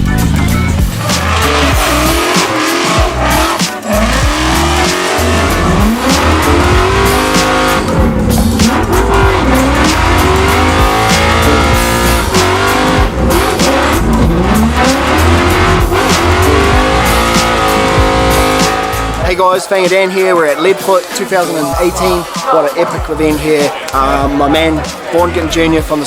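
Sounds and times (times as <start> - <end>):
car engines revving: 0.0 - 19.3
music with heavy bass line: 0.0 - 26.0.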